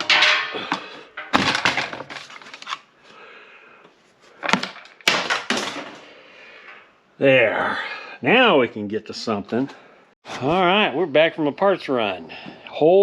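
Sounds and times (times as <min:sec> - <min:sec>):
metal parts clanking and rattling: 0:00.0 - 0:02.8.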